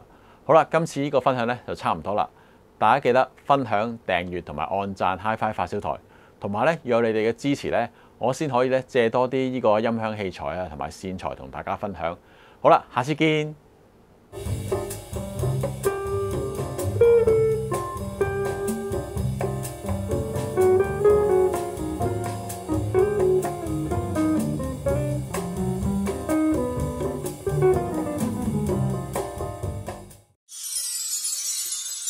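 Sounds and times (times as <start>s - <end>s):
instrumental music with drum beat: 14.4s - 30.4s.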